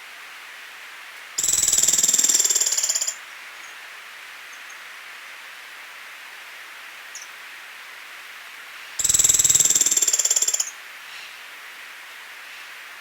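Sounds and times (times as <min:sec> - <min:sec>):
bird rattling trill: 0:01.4 - 0:03.2, 0:09.0 - 0:10.7.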